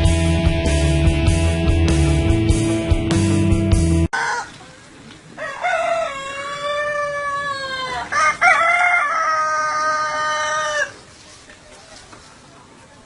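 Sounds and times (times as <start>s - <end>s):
music: 0.0s - 4.1s.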